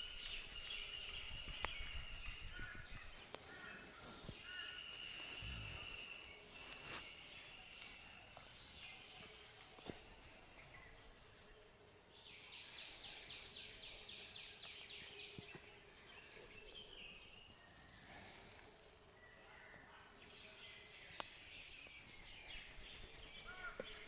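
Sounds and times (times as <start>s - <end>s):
rapid chirping animal call: 0.0s - 6.3s, 22.0s - 24.0s.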